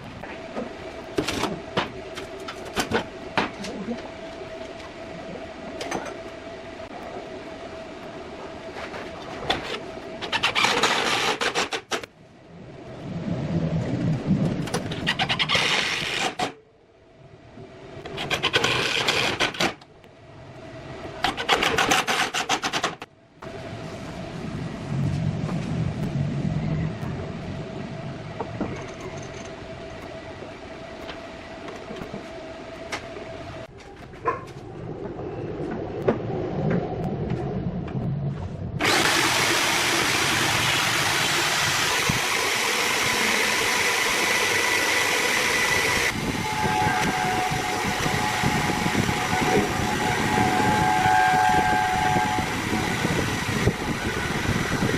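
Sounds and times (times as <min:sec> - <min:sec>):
electric hand drill whining: 0:15.2 - 0:16.5, 0:38.8 - 0:54.9
electric hand drill running: 0:15.3 - 0:16.5, 0:38.8 - 0:46.2.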